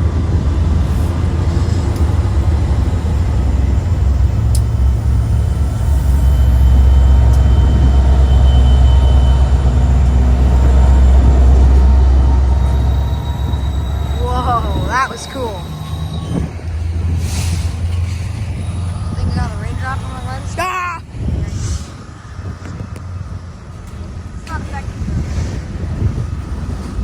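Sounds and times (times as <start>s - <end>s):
diesel locomotive engine rumble: 0.0s - 27.0s
wind buffeting microphone: 0.0s - 27.0s.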